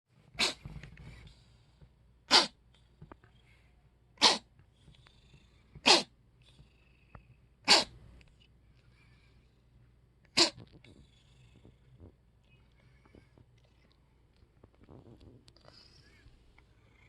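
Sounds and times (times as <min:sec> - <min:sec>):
cat sneezing: 0:00.4 - 0:00.7, 0:02.3 - 0:02.6, 0:04.2 - 0:04.5, 0:05.8 - 0:06.1, 0:07.6 - 0:08.0, 0:10.3 - 0:10.7.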